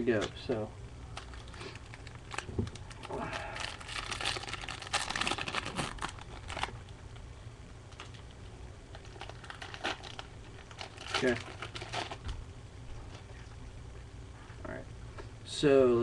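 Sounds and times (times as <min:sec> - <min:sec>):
card pack wrapper tearing and crinkling: 0:01.1 - 0:06.9, 0:08.9 - 0:12.2.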